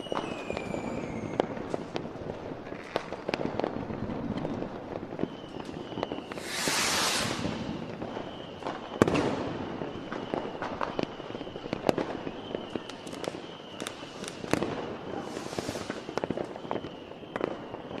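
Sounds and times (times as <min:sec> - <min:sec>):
firecracker and rocket bangs: 0:00.0 - 0:18.0
fireworks hissing: 0:05.7 - 0:09.6, 0:13.8 - 0:16.6.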